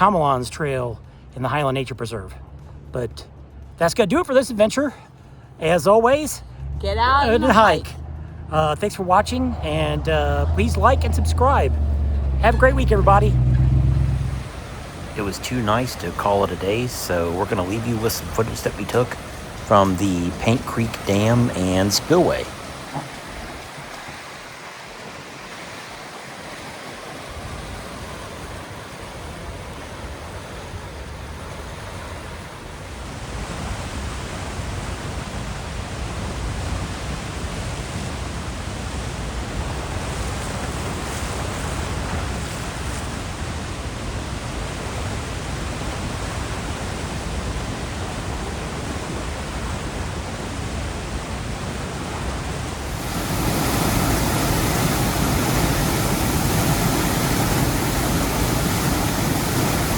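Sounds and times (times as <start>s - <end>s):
water rushing over dam spillway: 12.4s - 59.9s.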